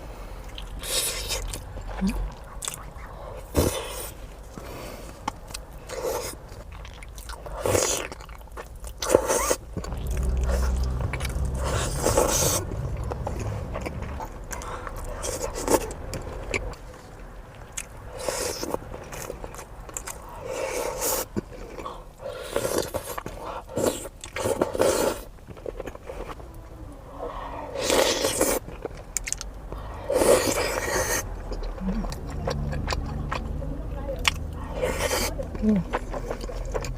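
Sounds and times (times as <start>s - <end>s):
person biting and chewing: 5.3s - 16.8s.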